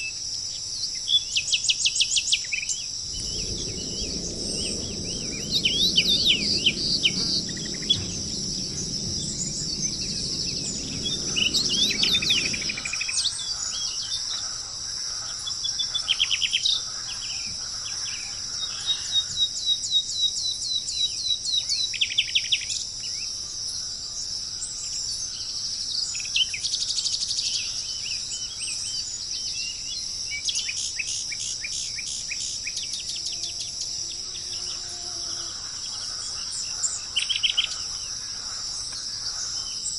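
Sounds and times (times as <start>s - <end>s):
small birds singing: 0.0s - 39.9s
steady high-pitched hiss: 0.0s - 39.9s
low rumble: 2.9s - 14.5s.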